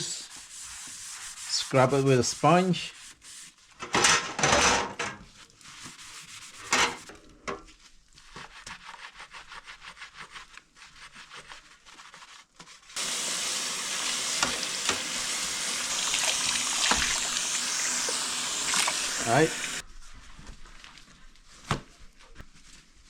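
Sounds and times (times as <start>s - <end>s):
sponge scrubbing metal tray: 0.1s - 3.8s, 5.2s - 19.8s
running water: 13.0s - 19.8s.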